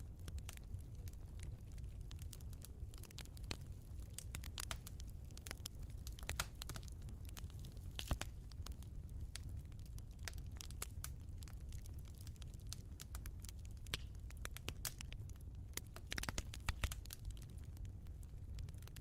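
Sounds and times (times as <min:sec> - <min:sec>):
wood fire crackling: 0:00.0 - 0:19.0.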